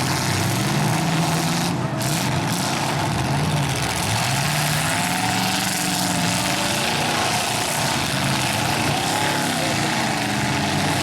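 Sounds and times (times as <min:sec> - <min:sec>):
car engines revving together: 0:00.0 - 0:11.0.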